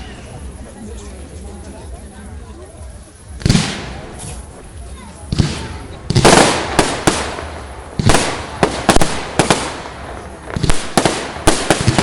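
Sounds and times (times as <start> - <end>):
fireworks bursting: 3.1 - 12.0
crackling echo: 3.3 - 12.0.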